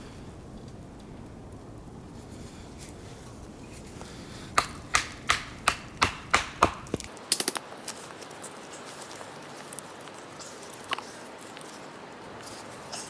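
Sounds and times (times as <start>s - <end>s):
axe chopping firewood: 4.4s - 7.8s.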